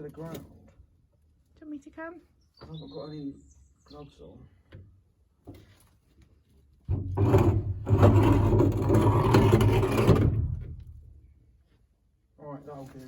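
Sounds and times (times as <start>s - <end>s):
heavy door scraping on ground: 6.9s - 11.0s.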